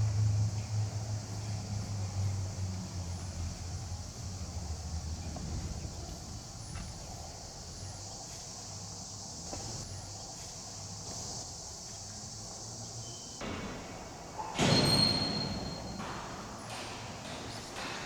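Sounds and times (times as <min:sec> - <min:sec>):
low traffic rumble: 0:00.0 - 0:09.9
cicadas chorus: 0:00.0 - 0:18.0.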